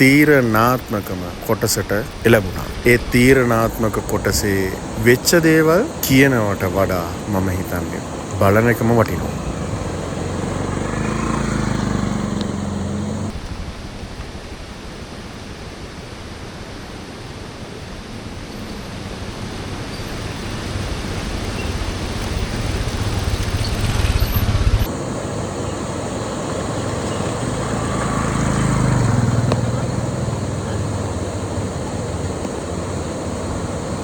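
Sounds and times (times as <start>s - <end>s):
motorbike engine hum: 0.0s - 13.3s, 20.8s - 34.0s
wind and road noise on microphone: 0.0s - 34.0s.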